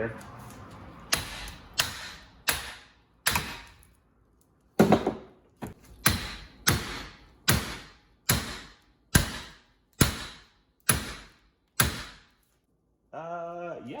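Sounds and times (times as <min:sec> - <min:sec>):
hammer striking metal rod: 0:01.1 - 0:03.8, 0:06.0 - 0:12.3.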